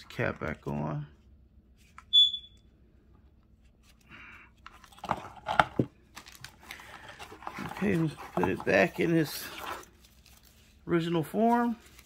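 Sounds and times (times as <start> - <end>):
high plastic squeak: 2.1 - 2.6.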